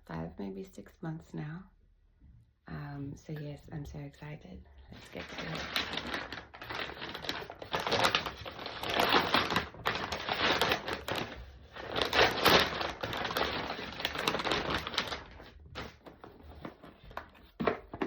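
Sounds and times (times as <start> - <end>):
packaging crackling and crinkling: 5.0 - 18.0.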